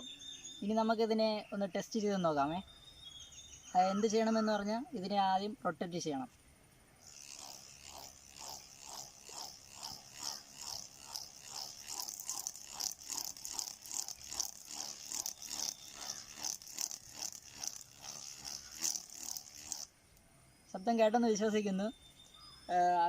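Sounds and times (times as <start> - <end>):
palm-leaf buzzer toy buzzing: 7.0 - 19.9.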